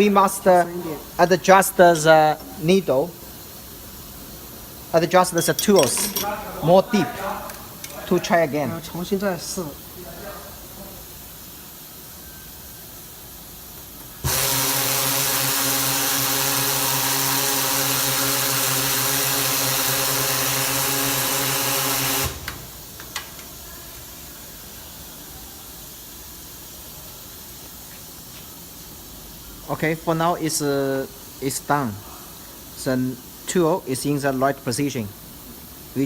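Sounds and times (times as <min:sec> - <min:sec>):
machine humming and hissing: 0:10.8 - 0:23.1.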